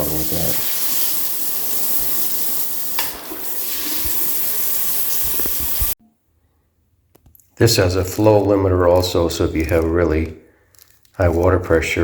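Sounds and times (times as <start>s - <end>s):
shower head water spraying: 0.0s - 6.0s.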